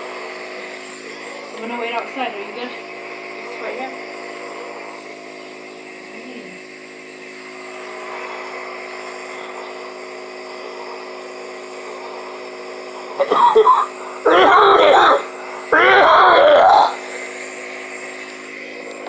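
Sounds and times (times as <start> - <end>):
steady mechanical hum: 0.0 - 19.0
person's voice: 14.3 - 17.0.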